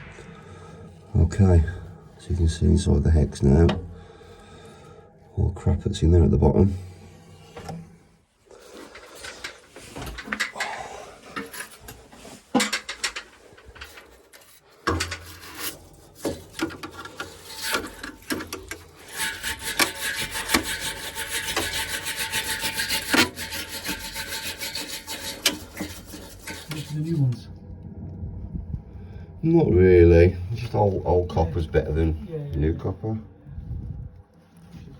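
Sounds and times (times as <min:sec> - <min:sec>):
low steady hum: 0:00.0 - 0:19.7, 0:23.8 - 0:34.9
metal scraping and rubbing: 0:00.0 - 0:27.6.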